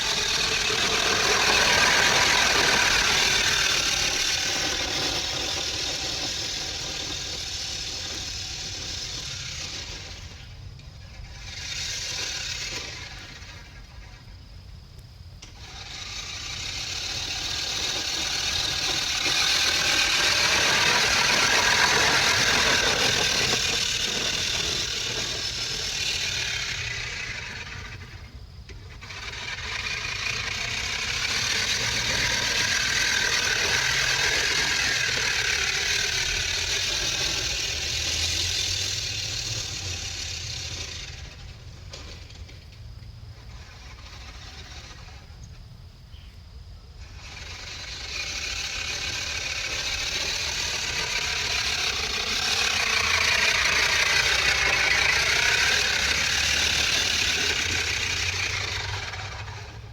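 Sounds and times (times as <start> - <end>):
vehicle passing by: 47.1 - 59.9.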